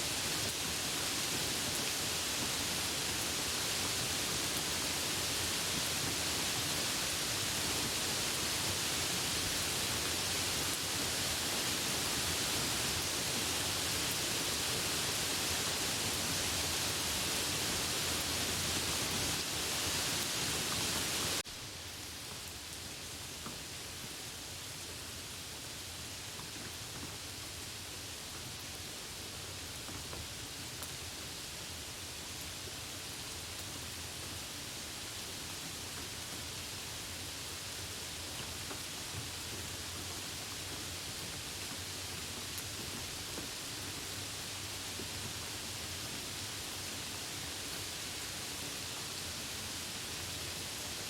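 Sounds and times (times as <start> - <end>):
heavy rain falling: 0.0 - 25.4, 26.4 - 51.0.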